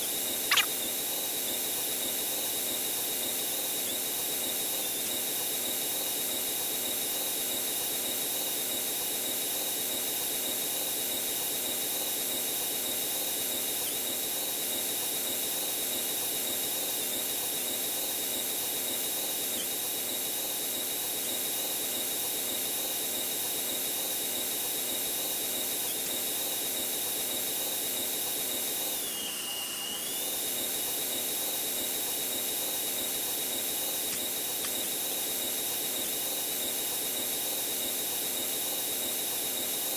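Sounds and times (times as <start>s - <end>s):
high-pitched airplane engine whine: 0.5s - 0.7s.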